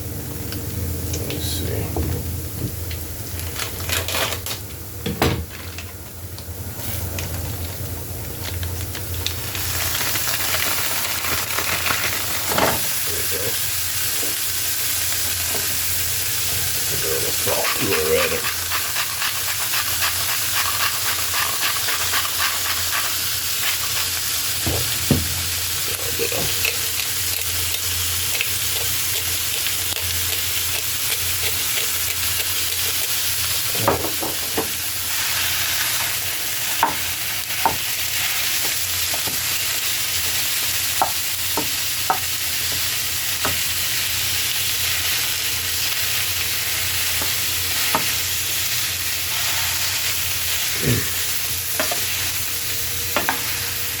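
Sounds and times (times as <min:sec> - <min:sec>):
meat sizzling in a pan: 0:08.5 - 0:54.0
utensil scraping a pan: 0:17.4 - 0:24.1.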